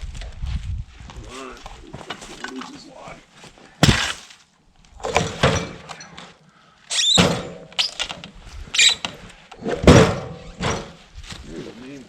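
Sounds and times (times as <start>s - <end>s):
heavy log knocks and clunks: 3.8s - 4.3s.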